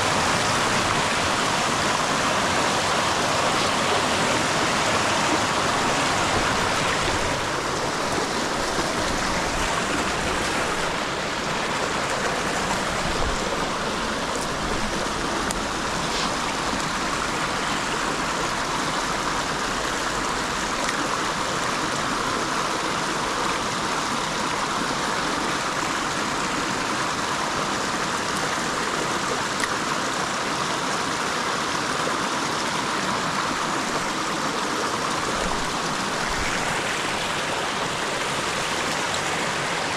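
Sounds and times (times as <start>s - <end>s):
creek water rushing: 0.0s - 39.9s.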